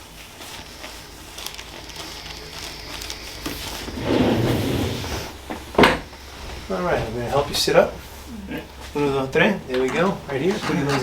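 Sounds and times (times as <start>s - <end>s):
rustling on padded table: 0.0s - 8.1s.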